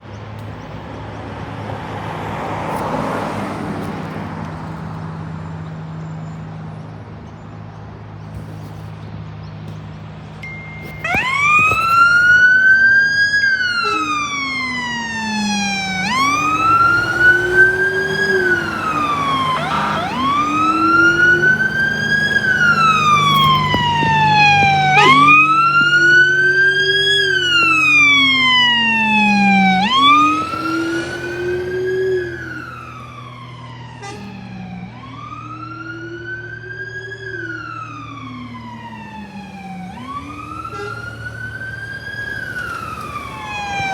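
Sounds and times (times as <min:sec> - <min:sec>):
truck engine running: 0:06.8 - 0:33.8
fire truck siren wailing: 0:10.4 - 0:43.9.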